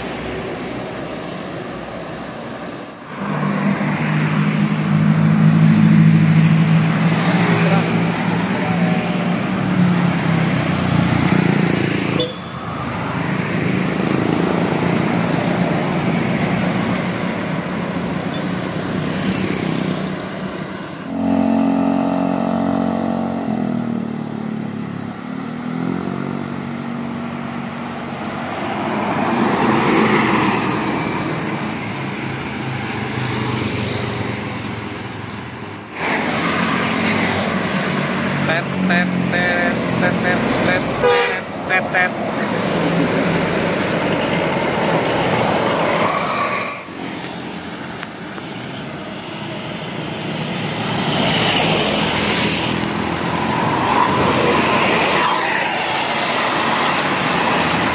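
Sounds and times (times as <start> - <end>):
traffic noise: 0.0 - 57.9
motor vehicle running: 3.1 - 45.8.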